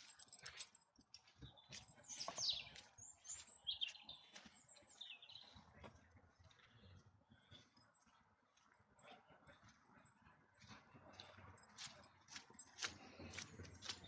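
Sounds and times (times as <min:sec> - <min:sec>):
small birds chirping: 0:00.0 - 0:08.2.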